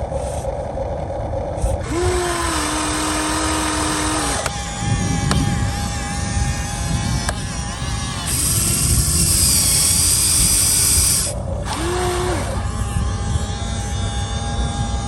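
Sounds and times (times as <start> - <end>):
high-pitched whine: 0.0 - 15.0
model excavator motors whirring: 0.0 - 15.0.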